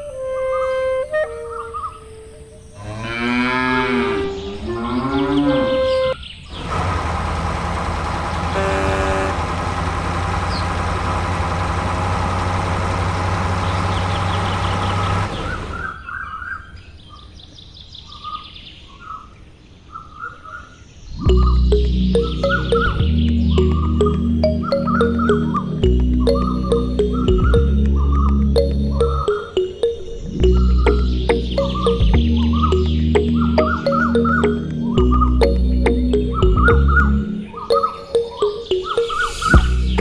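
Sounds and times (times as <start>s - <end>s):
cattle mooing: 2.8s - 6.2s.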